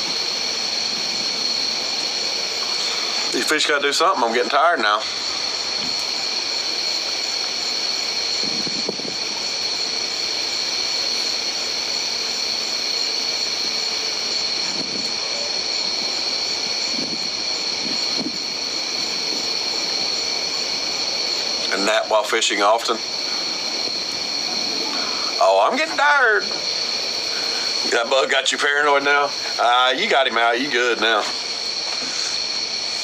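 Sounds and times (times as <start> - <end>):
night insects chorus: 0.0 - 33.0.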